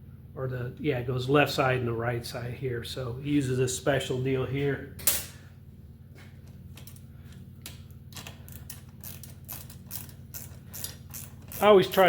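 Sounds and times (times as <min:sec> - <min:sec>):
low steady hum: 0:00.0 - 0:12.0
bicycle brake parts clicking: 0:07.6 - 0:11.6.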